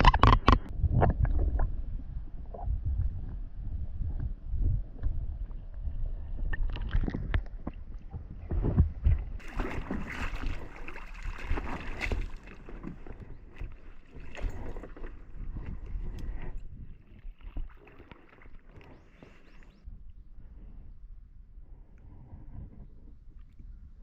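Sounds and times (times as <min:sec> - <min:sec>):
knocks and bumps on a small boat: 0:08.1 - 0:16.0
rushing splash-like noise: 0:09.4 - 0:13.2.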